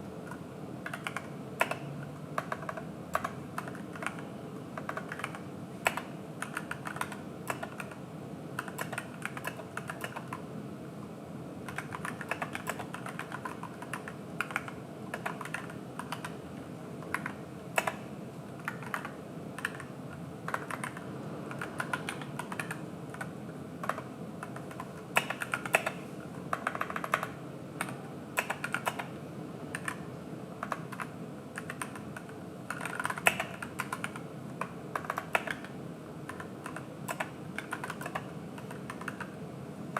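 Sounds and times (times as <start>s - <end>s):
mechanical keyboard typing: 0.2s - 8.0s, 8.6s - 10.5s, 11.6s - 16.4s, 17.0s - 39.4s.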